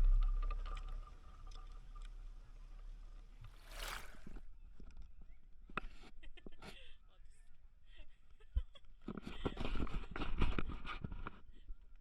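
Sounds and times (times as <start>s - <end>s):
water splashing rush: 3.5s - 4.4s.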